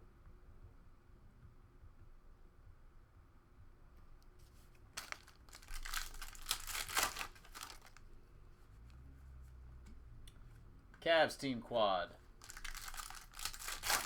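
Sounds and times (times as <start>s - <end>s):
plastic wrapper tearing and crinkling: 4.9s - 8.0s, 12.4s - 14.0s.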